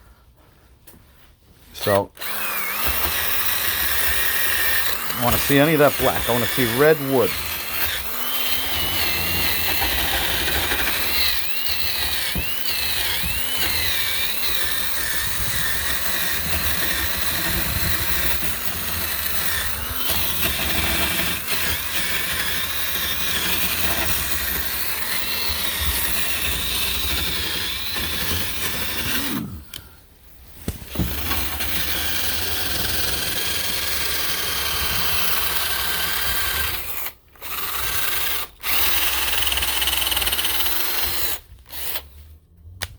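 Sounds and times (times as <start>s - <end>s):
cordless drill against wood: 1.8s - 30.0s, 30.6s - 42.2s.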